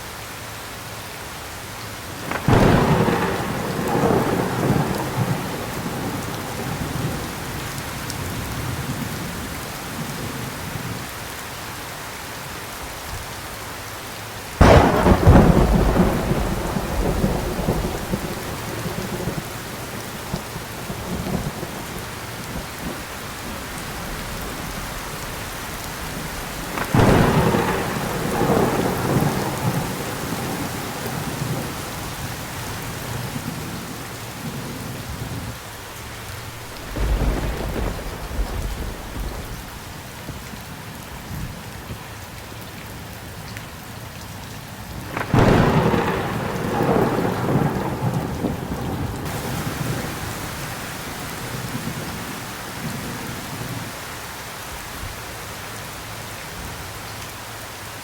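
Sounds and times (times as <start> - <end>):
heavy rain falling: 0.0 - 58.0
sharp thunderclap: 2.2 - 7.5, 14.6 - 31.8, 36.4 - 40.0, 45.1 - 50.8
thunder rumbling: 2.2 - 10.9, 14.6 - 40.3, 45.0 - 53.9.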